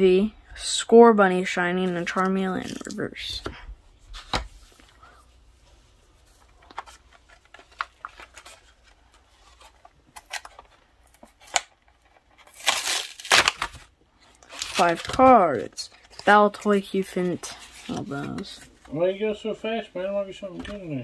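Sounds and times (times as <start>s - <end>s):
foil wrapper rustling: 12.4s - 16.8s.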